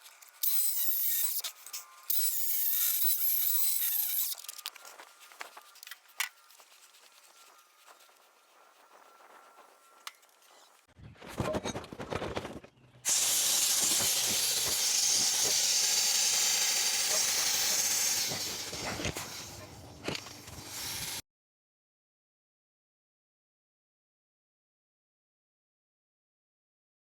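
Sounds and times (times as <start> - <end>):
hiss of rushing air: 13.1 - 19.6, 20.5 - 21.2.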